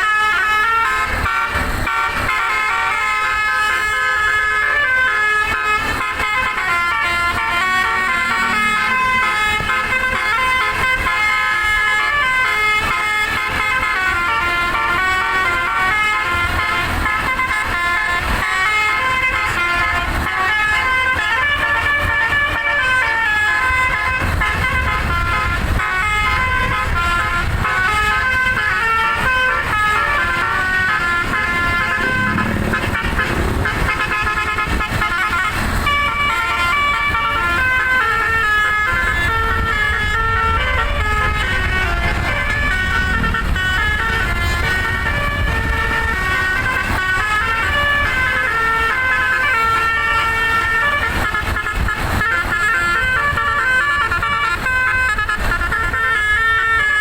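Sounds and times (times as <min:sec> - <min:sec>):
musical air horn: 0:00.0 - 0:57.0
low rumble: 0:24.8 - 0:34.5, 0:38.9 - 0:48.0.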